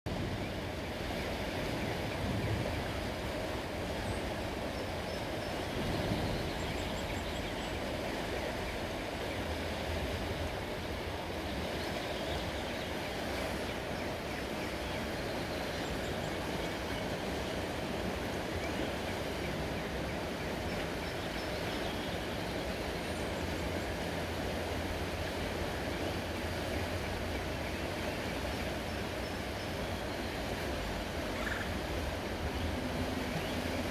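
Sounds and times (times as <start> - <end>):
low engine rumble: 29.7 - 33.9
faint bird chirps: 31.4 - 31.8.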